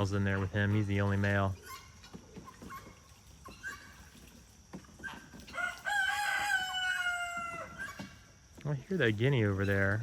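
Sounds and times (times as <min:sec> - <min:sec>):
rooster crowing: 0:05.5 - 0:08.1.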